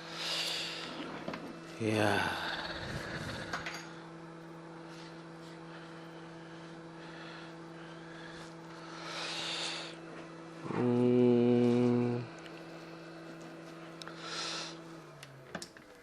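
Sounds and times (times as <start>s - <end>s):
low electrical hum: 0.0s - 16.0s.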